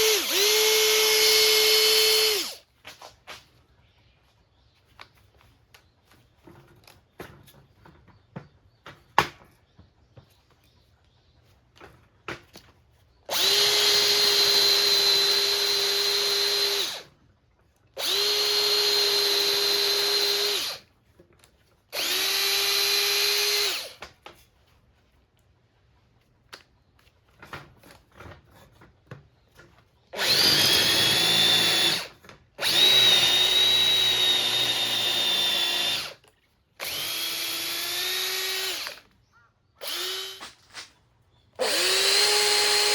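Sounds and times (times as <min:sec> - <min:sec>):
cordless drill whining: 0:00.0 - 0:03.0, 0:13.3 - 0:17.1, 0:17.9 - 0:20.9, 0:21.9 - 0:24.0, 0:30.1 - 0:39.2, 0:39.8 - 0:40.8, 0:41.6 - 0:42.9.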